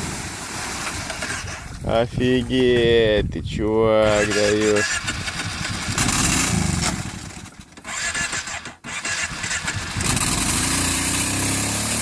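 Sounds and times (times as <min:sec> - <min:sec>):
engine running unevenly: 0:09.2 - 0:12.0.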